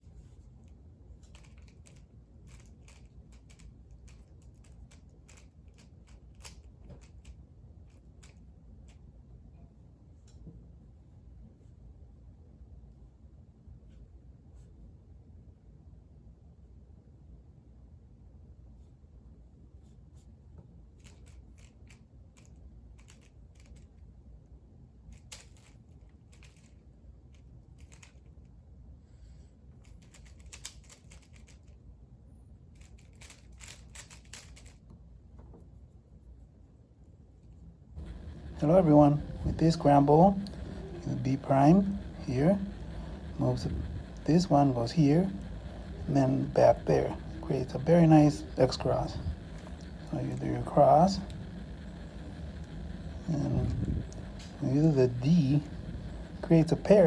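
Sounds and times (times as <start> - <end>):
puzzle cube plastic clicks: 1.3 - 8.4, 21.0 - 23.9, 25.1 - 26.8, 27.8 - 28.3, 29.8 - 31.8, 32.8 - 34.8.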